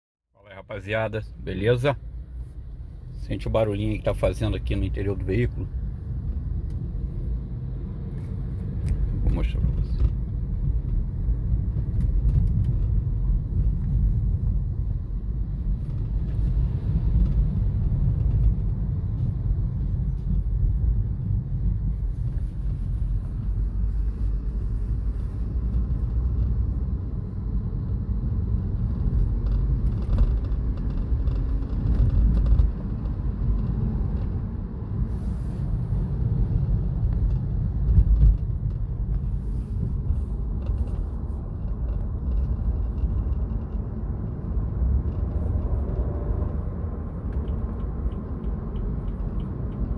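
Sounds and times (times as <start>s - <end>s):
road rumble inside car: 0.4s - 49.9s
knocks and rattles over bumps: 28.8s - 34.4s, 36.9s - 49.9s.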